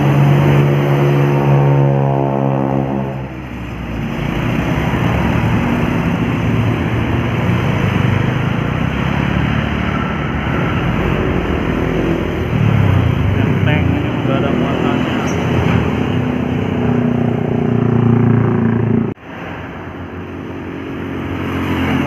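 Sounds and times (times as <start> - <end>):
heavy diesel vehicle passing: 0.0 - 22.0
road traffic rumbling: 0.0 - 22.0.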